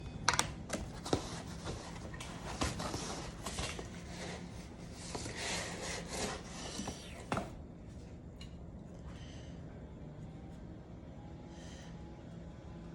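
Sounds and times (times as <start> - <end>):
parts clicking and knocking: 0.0 - 1.2.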